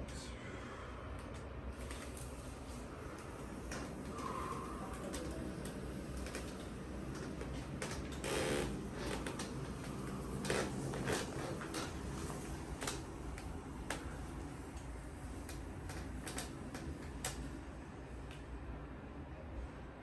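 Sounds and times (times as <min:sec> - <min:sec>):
steady low hum: 0:00.0 - 0:20.0
treatment table creaking: 0:01.8 - 0:17.5.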